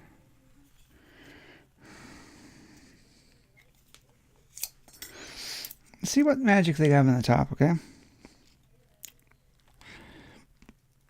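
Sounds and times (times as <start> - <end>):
faint breathing: 0.0 - 3.7, 4.9 - 5.9, 7.7 - 8.7, 9.7 - 10.6.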